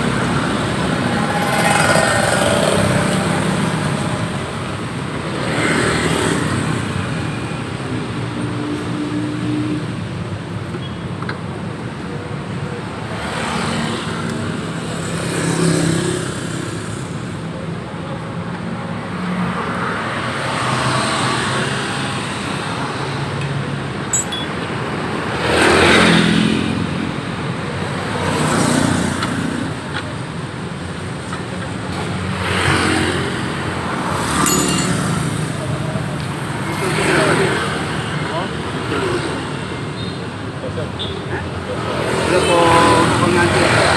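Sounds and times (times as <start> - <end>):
motorcycles passing: 0.0 - 9.7, 32.1 - 39.8
cars passing: 0.0 - 10.5, 18.9 - 43.9.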